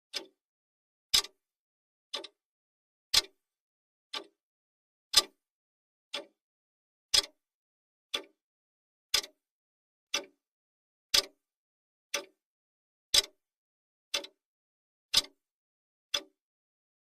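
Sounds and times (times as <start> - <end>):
clock ticking: 0.1 - 0.4, 1.1 - 1.4, 2.1 - 2.4, 3.1 - 3.4, 4.1 - 4.4, 5.1 - 5.4, 6.1 - 6.4, 7.1 - 7.4, 8.1 - 8.4, 9.1 - 9.4, 11.1 - 11.4, 12.1 - 12.4, 13.1 - 13.4, 14.1 - 14.4, 15.1 - 15.4, 16.1 - 16.4.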